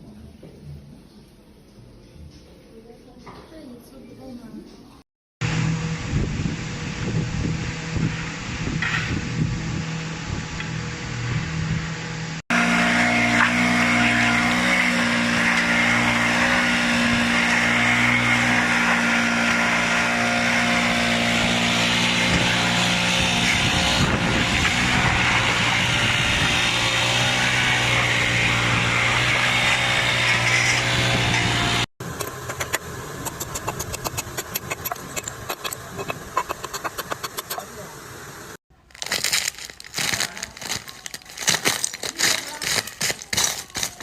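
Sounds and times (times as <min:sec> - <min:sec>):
machine droning: 0:05.4 - 0:44.0
rapid clicking: 0:32.2 - 0:37.6.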